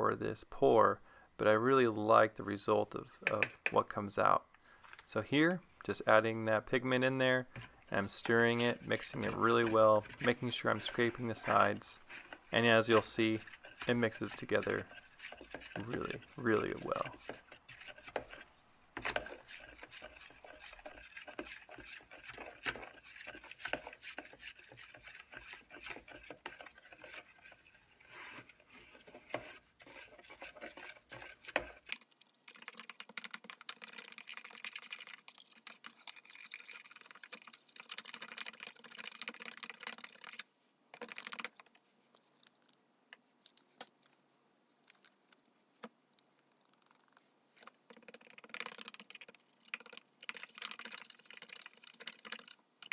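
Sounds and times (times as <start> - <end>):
stir stick scraping a cup: 7.0 - 41.8, 46.6 - 52.9.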